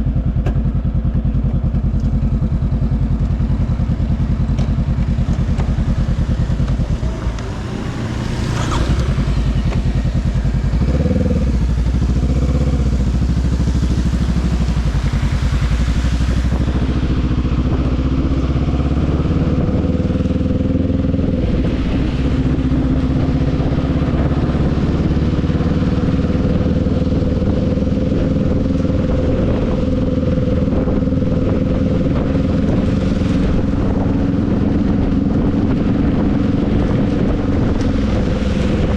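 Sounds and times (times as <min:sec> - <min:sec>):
motorcycle engine running: 0:00.0 - 0:38.9
road noise hiss: 0:01.8 - 0:24.9, 0:31.4 - 0:38.9.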